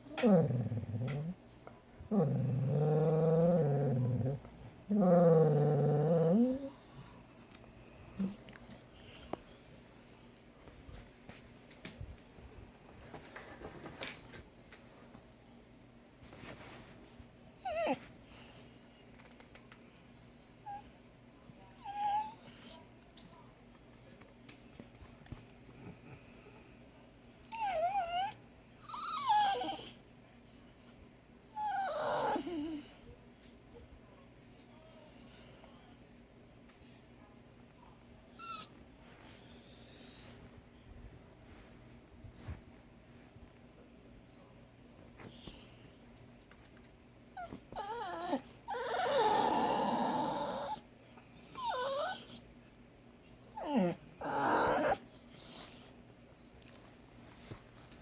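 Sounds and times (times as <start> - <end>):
dog whining: 0.0 - 1.4, 2.1 - 6.8, 17.6 - 18.1, 21.8 - 22.7, 27.4 - 30.0, 31.5 - 33.0, 38.4 - 38.7, 47.4 - 50.8, 51.6 - 52.4, 53.6 - 55.9.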